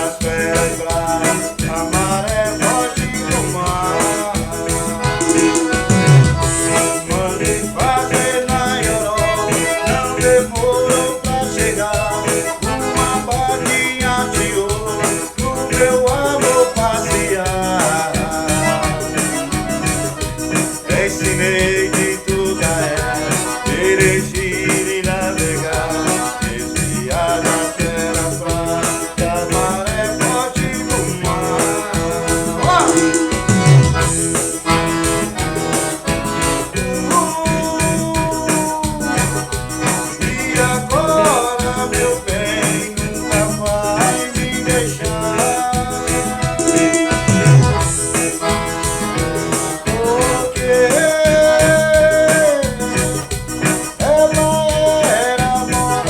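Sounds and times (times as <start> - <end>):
fast shaker and drum beat: 0.0 - 56.0
sustained lead melody: 0.9 - 21.1, 30.9 - 37.0, 46.0 - 50.8.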